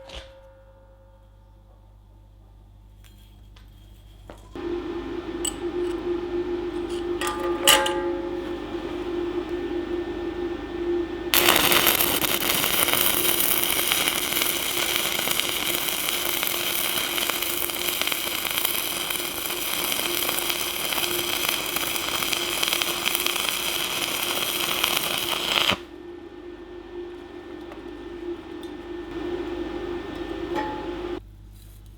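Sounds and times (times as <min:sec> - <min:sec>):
faint steady hum: 0:00.4 - 0:31.9
welding arc crackling: 0:11.3 - 0:31.2.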